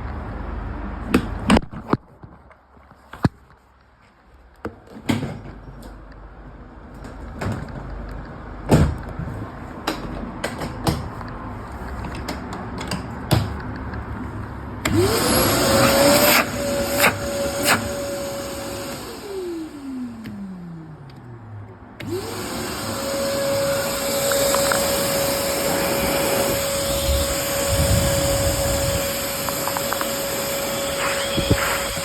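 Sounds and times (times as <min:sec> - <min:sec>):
vacuum cleaner motor whining: 0:14.8 - 0:21.0, 0:22.0 - 0:32.0.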